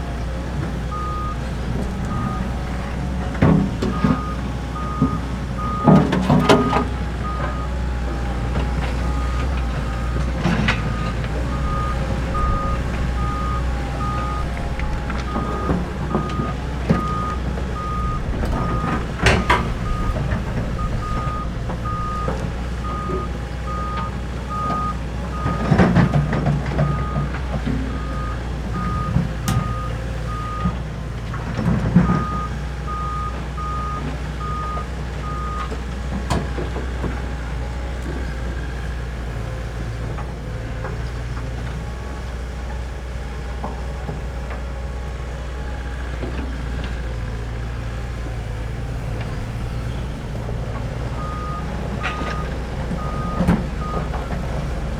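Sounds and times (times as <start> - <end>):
excavator engine running: 0.0 - 54.9
reversing alarm beeping: 0.9 - 3.3, 3.9 - 30.8, 32.0 - 35.8, 51.1 - 54.3.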